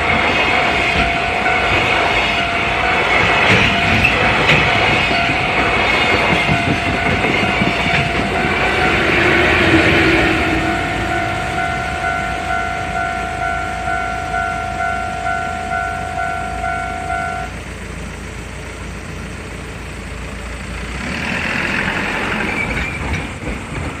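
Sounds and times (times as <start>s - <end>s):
level crossing bell pulses: 0.0s - 17.6s
freight train rumble: 0.0s - 24.0s.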